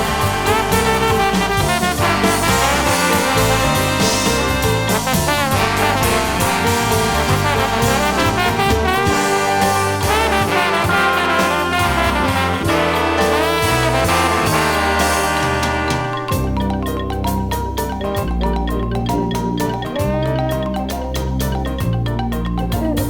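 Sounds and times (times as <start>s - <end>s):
trombone and brass melody: 0.0s - 17.2s, 17.9s - 21.8s
drums: 0.0s - 23.0s
jazz-rock music from vinyl record: 0.0s - 23.0s.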